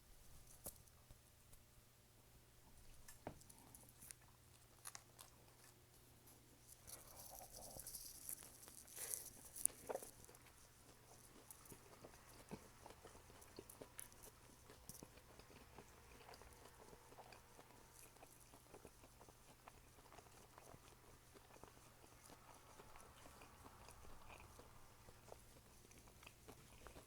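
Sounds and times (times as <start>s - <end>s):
person chewing with wet mouth clicks: 7.0s - 27.0s.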